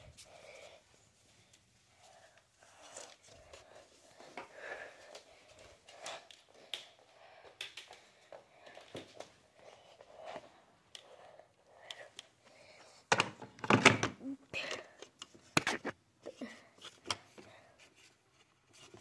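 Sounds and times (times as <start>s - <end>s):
faint clicks and taps: 2.3s - 13.4s.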